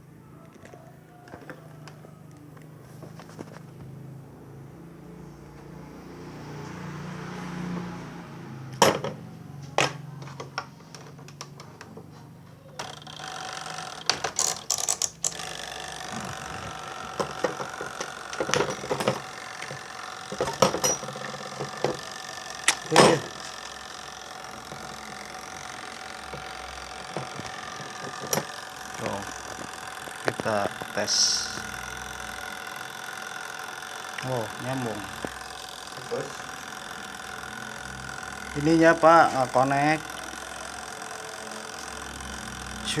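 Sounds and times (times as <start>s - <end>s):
steady mechanical hum: 0.0s - 43.0s
clicks and knocks of tool work: 8.8s - 38.6s.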